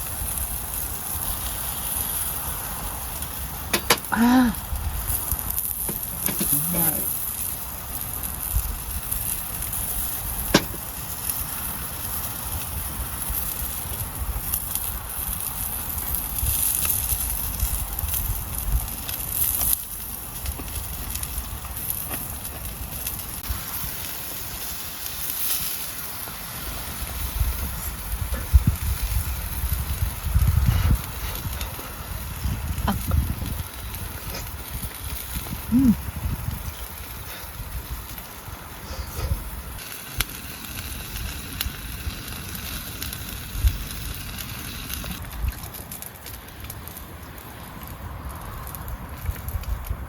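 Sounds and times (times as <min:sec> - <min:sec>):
campfire crackling and hissing: 0:00.0 - 0:50.0
fire popping: 0:00.0 - 0:50.0
wind on microphone: 0:26.7 - 0:39.8, 0:48.7 - 0:50.0.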